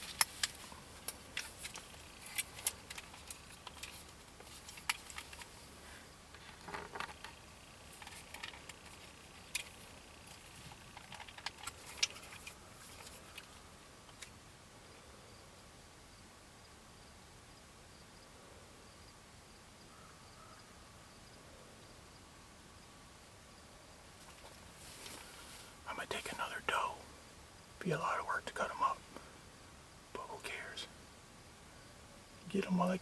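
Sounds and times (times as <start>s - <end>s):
short rustle: 24.2s - 25.8s.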